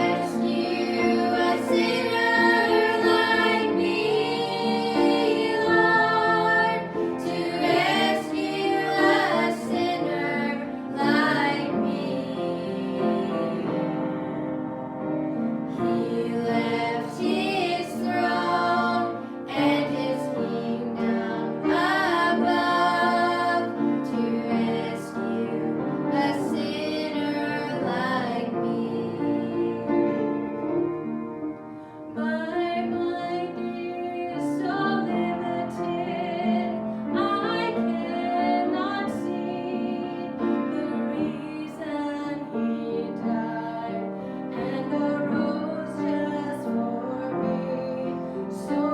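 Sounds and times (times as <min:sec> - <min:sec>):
piano accompaniment: 0:00.0 - 0:48.9.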